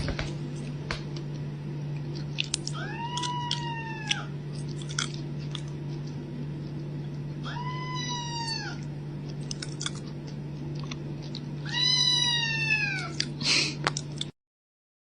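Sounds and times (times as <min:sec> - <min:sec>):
steady low hum: 0:00.0 - 0:14.3
kitten meowing: 0:02.7 - 0:04.3, 0:07.4 - 0:08.8, 0:11.6 - 0:13.2.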